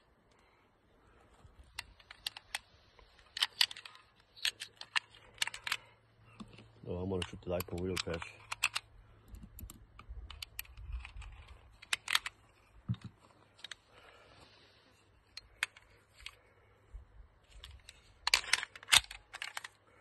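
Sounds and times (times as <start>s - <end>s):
handling clicks and taps: 3.2s - 13.8s.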